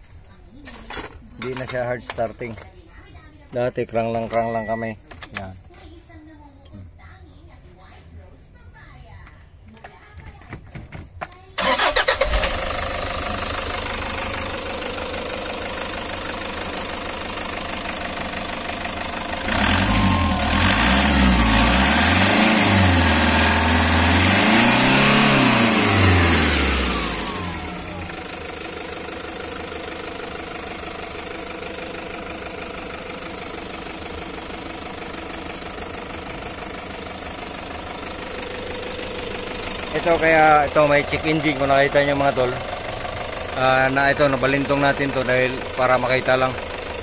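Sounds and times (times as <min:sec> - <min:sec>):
van engine idling and revving: 0:11.6 - 0:47.0.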